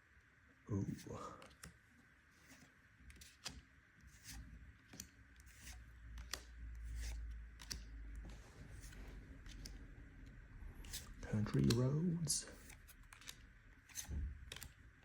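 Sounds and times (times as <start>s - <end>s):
trading cards swishing: 2.4s - 9.8s, 10.8s - 14.7s.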